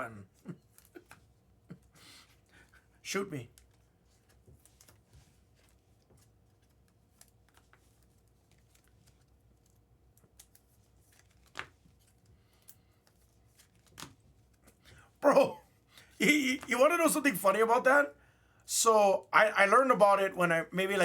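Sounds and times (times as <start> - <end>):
trading cards being handled: 3.5 - 17.3.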